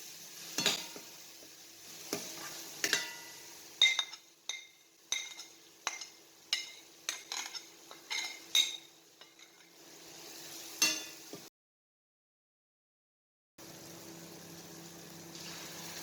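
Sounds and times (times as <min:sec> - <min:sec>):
food sizzling: 0:00.0 - 0:11.5, 0:13.6 - 0:16.0
metal utensil scraping a pan: 0:00.5 - 0:01.2, 0:01.9 - 0:09.8.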